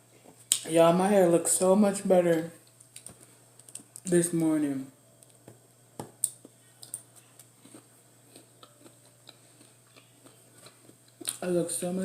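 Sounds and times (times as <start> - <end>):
chewing smacks: 6.2 - 11.4.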